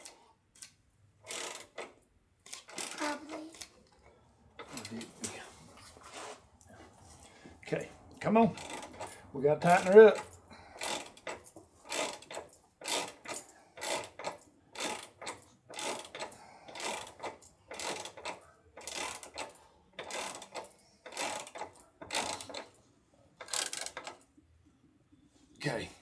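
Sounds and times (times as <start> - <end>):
ratchet wrench clicking: 0.0 - 3.0, 8.6 - 22.7, 23.4 - 24.2.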